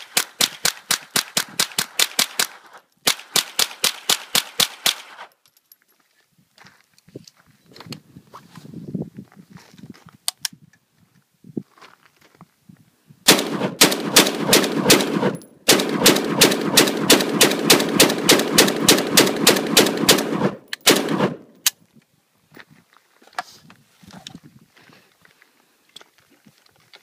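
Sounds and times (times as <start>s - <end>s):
rapid gunshots: 13.3s - 21.4s.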